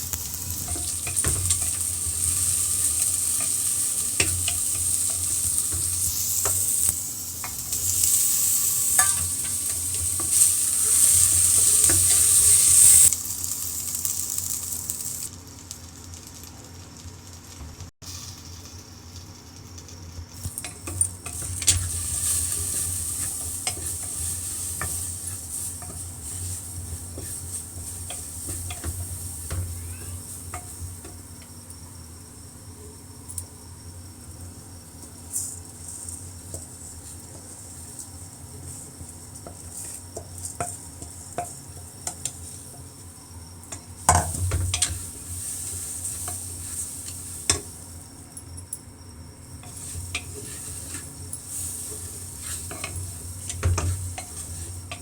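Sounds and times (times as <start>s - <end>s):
food sizzling in pan: 0.0s - 55.0s
spoon scraping pan: 0.5s - 13.1s, 20.5s - 31.2s, 44.1s - 47.9s, 49.6s - 55.0s
spoon clanking on pan: 8.9s - 12.2s.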